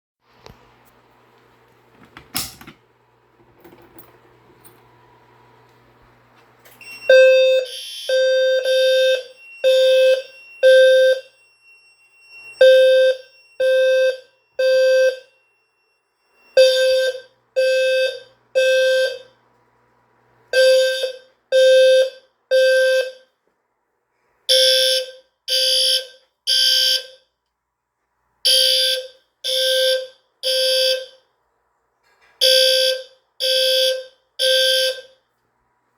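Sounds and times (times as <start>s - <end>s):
fire alarm sounders: 6.6s - 19.4s, 20.5s - 23.3s, 24.5s - 27.3s, 28.4s - 31.2s, 32.4s - 35.2s.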